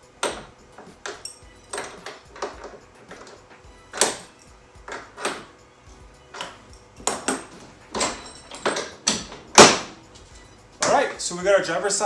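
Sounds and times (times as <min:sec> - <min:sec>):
wrench clinking on metal: 0:00.0 - 0:11.4.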